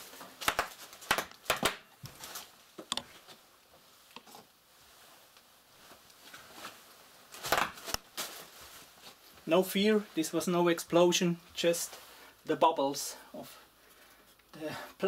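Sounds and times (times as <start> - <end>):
bubble wrap rustling: 0.0 - 10.5
bubble wrap popping: 7.3 - 9.2.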